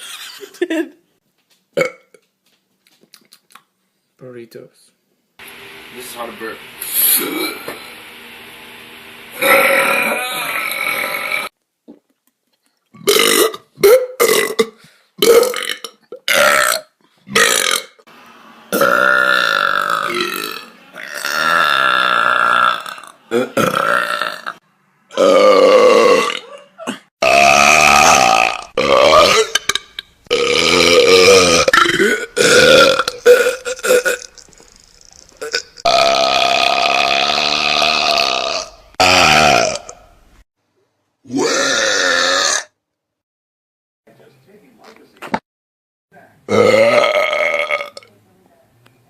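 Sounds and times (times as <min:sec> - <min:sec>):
person burping: 0:01.8 - 0:02.2, 0:09.4 - 0:11.5, 0:13.0 - 0:18.0, 0:18.7 - 0:40.1, 0:41.3 - 0:42.8, 0:46.5 - 0:48.1.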